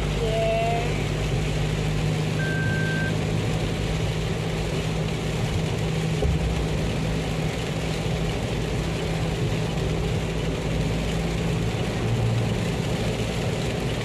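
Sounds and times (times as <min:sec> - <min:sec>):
vehicle running with low hum: 0:00.0 - 0:14.0
thin whistle-like tone: 0:02.4 - 0:03.1.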